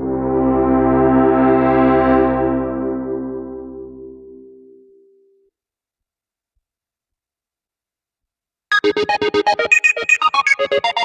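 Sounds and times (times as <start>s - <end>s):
synthesizer chord pulsing: 0.0s - 5.1s.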